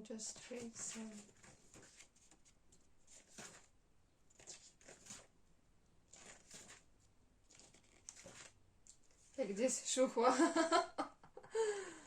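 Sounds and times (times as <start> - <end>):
paper pages rustling and turning: 0.2 - 3.7, 4.3 - 5.4, 6.1 - 9.5.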